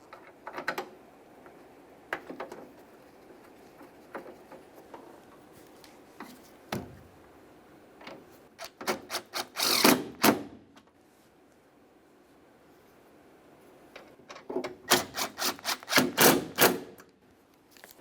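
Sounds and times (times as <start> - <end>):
hand ratchet clicking: 14.9 - 16.4.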